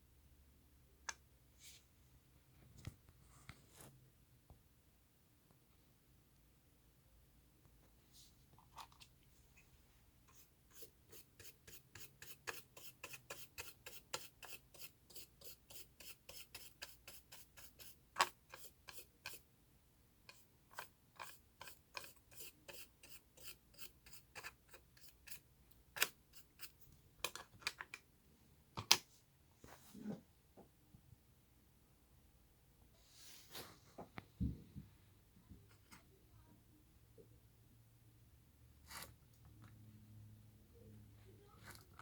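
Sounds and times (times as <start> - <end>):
hand tool scraping: 10.3 - 19.4, 20.8 - 25.4.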